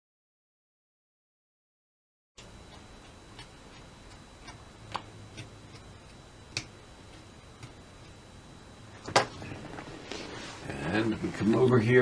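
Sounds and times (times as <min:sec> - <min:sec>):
low room hum: 0:02.4 - 0:12.0.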